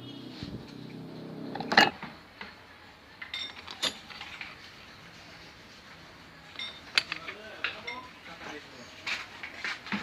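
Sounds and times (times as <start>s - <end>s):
metal parts clinking: 3.2s - 4.6s, 6.5s - 8.1s.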